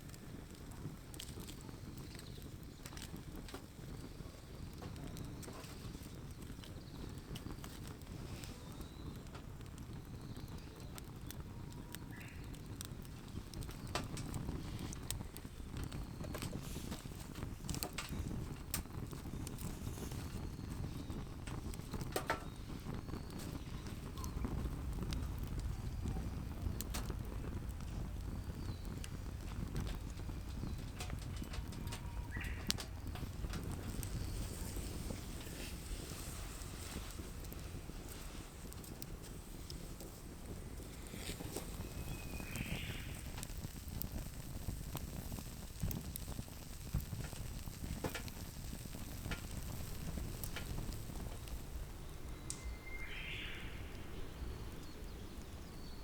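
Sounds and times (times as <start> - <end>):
steady low rumble: 23.8 - 42.0, 47.5 - 56.0.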